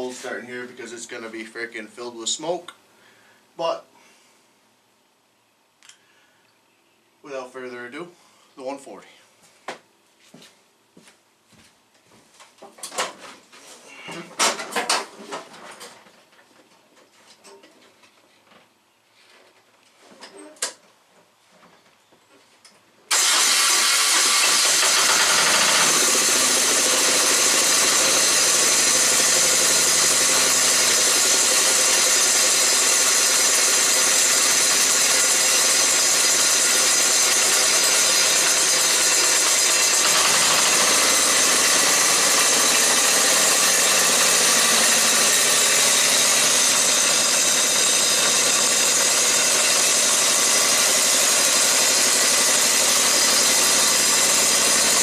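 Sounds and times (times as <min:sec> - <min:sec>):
tractor diesel engine idling: 0:23.1 - 0:55.0.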